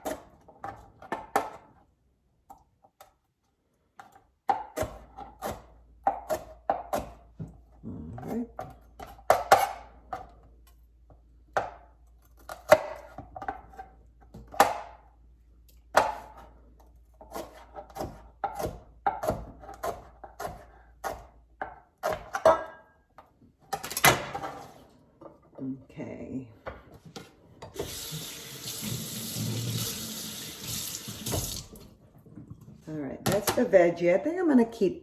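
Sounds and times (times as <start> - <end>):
knife chopping on cutting board: 17.2 - 22.7.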